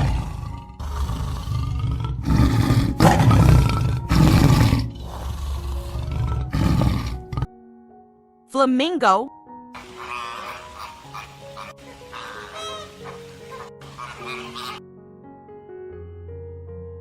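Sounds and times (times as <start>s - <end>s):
tiger roaring: 0.0s - 7.5s.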